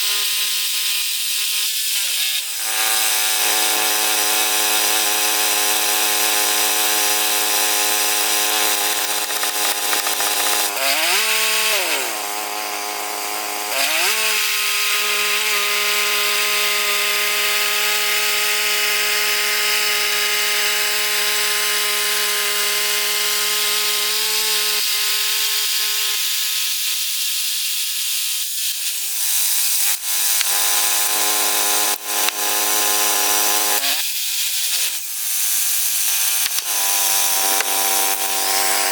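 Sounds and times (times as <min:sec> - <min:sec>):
band sawmill cutting wood: 0:00.0 - 0:17.8, 0:28.2 - 0:38.9.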